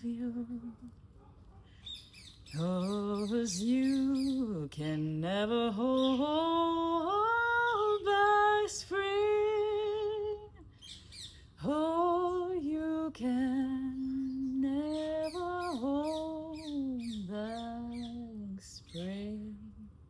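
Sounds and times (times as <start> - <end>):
birds chirping: 0.0 - 4.9, 9.6 - 11.6, 14.0 - 19.4
woman singing a long note: 11.6 - 19.9.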